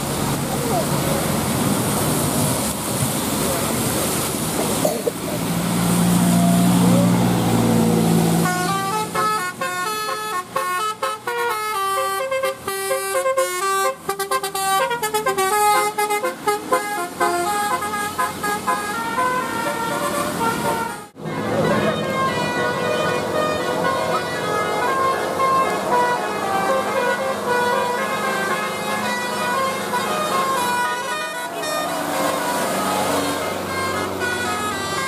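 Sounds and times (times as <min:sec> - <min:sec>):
musical air horn tune: 0:08.4 - 0:35.0.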